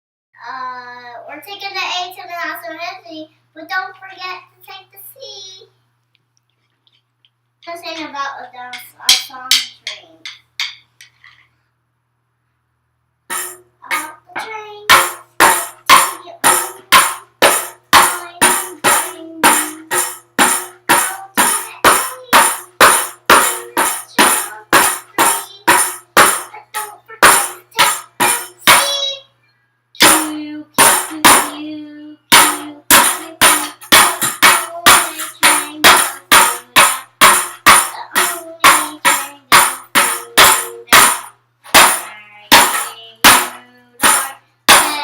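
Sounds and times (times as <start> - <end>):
tambourine beat with jingling: 13.3 - 14.2, 14.9 - 29.1, 30.0 - 31.5, 32.3 - 45.0.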